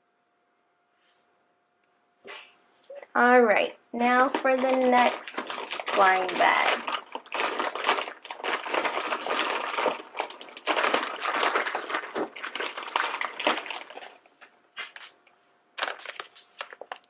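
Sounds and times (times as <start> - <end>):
plastic packets crinkling: 4.0 - 15.2, 15.8 - 17.0.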